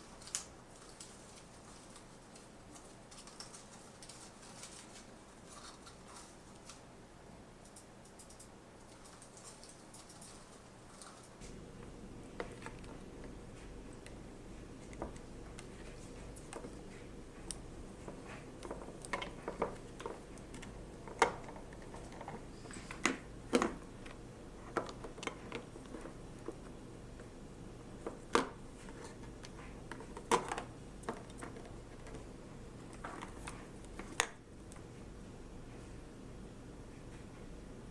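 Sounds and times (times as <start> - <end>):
bird pecking and knocking objects: 14.9 - 23.9.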